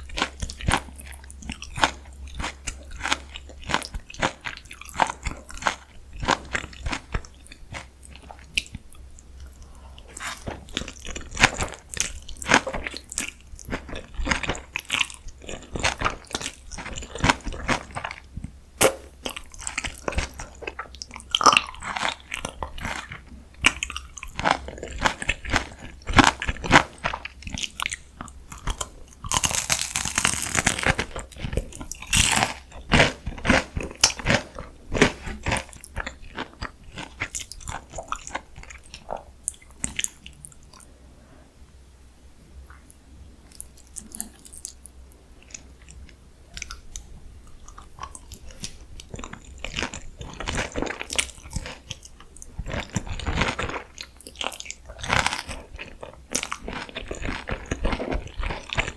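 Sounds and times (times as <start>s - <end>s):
crisp bites crunching: 18.8s - 39.0s, 47.6s - 58.9s.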